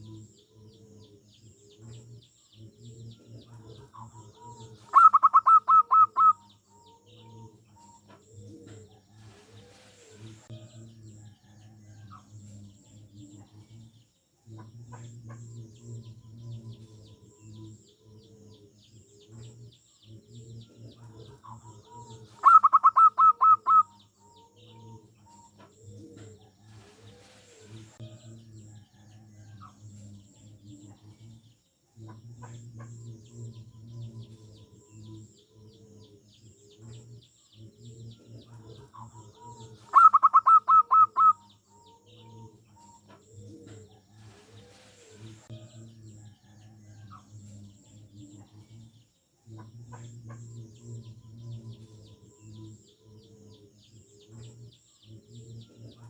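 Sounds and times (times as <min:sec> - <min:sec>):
dove staccato cooing: 0:00.0 - 0:10.5, 0:14.5 - 0:28.0, 0:32.0 - 0:45.5, 0:49.5 - 0:56.0
faint high bird chirps: 0:00.0 - 0:13.9, 0:14.9 - 0:31.2, 0:32.4 - 0:49.0
soft low bird calls: 0:02.0 - 0:08.0, 0:20.9 - 0:24.6, 0:36.4 - 0:45.5.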